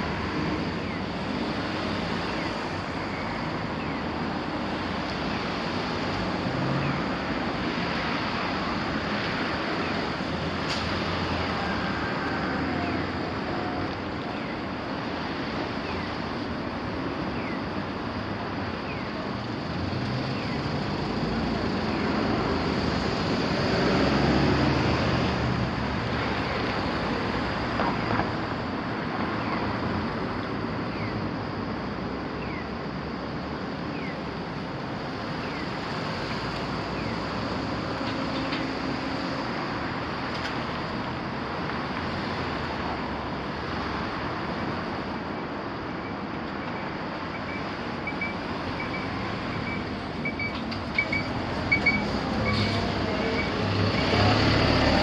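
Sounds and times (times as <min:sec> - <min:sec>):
road traffic noise: 0:00.0 - 0:55.0
vehicle passing: 0:51.3 - 0:55.0.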